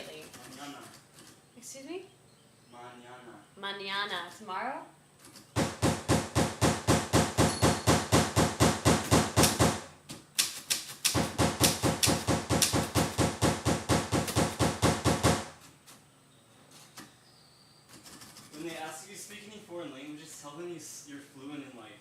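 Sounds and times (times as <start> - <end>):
manual typewriter keys clicking: 9.4 - 13.2.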